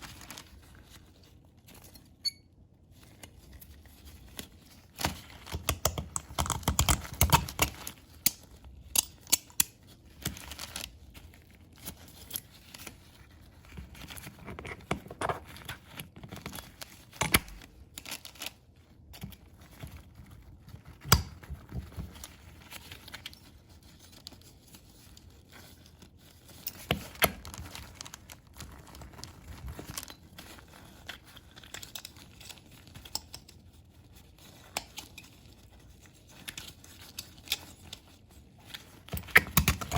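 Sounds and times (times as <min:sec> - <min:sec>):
rustling: 0:00.0 - 0:02.2, 0:09.8 - 0:39.9
small parts clicking and tapping: 0:05.0 - 0:10.8.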